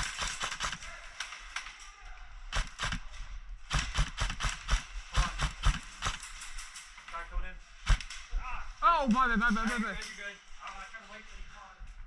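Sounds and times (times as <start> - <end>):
airsoft guns firing: 0.0 - 1.6, 2.5 - 6.6, 7.8 - 8.2.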